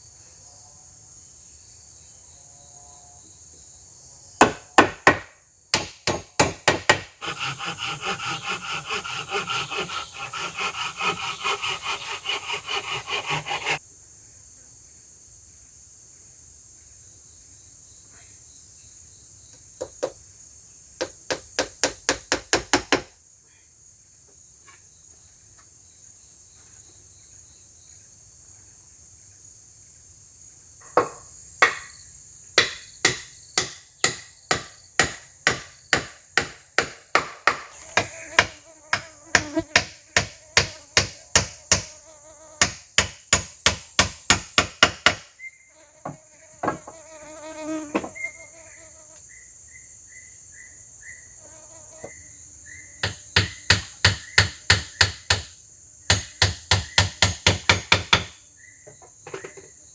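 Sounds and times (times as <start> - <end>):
forest insects droning: 0.0 - 59.9
sharp blows on wood: 4.4 - 13.8, 32.6 - 41.9, 42.6 - 45.3, 53.0 - 55.5
rasping stroke on wood: 6.9 - 13.8.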